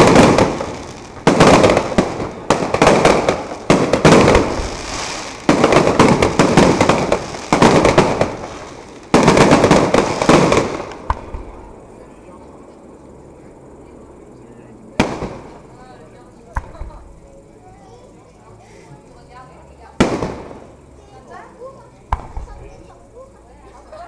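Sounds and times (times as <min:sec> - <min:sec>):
firework bangs: 0:00.0 - 0:11.9, 0:15.0 - 0:15.8, 0:16.4 - 0:17.2, 0:19.9 - 0:20.9, 0:22.1 - 0:22.8
firework crackling: 0:00.0 - 0:12.6, 0:14.9 - 0:24.0.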